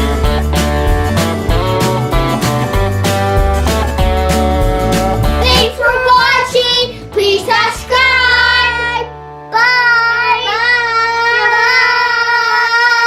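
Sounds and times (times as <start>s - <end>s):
backing music: 0.0s - 12.8s
child singing: 5.4s - 13.0s.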